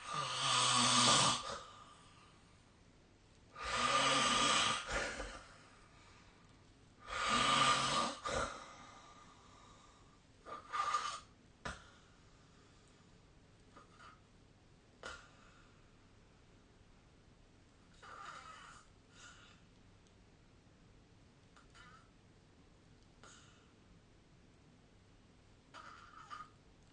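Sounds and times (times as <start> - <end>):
person snoring: 0.0 - 1.9, 3.6 - 5.6, 7.0 - 9.0.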